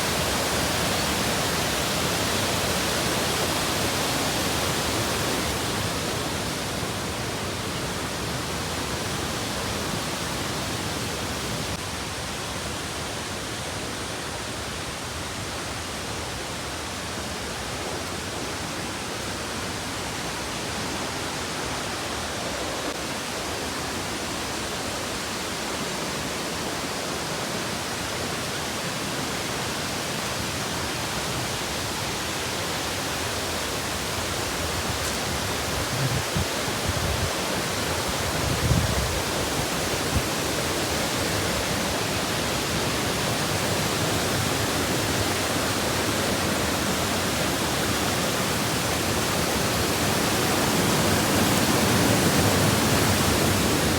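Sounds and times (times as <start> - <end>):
waterfall rushing: 0.0 - 53.9.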